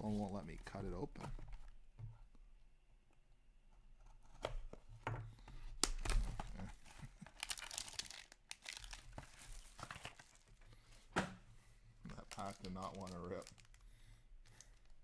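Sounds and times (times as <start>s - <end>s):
plastic wrap cracking: 5.8s - 10.6s, 12.1s - 14.9s
plastic wrap tearing: 5.8s - 10.6s, 12.1s - 14.9s.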